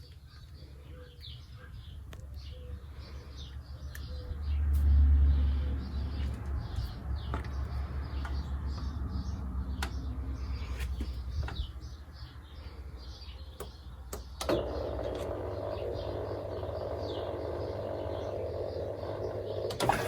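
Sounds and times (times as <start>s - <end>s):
washing machine hum: 14.2s - 20.0s.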